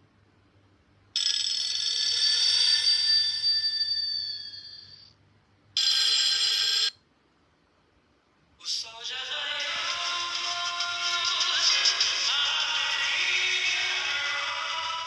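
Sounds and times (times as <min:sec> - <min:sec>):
bright chiming ringtone: 0:01.2 - 0:05.1.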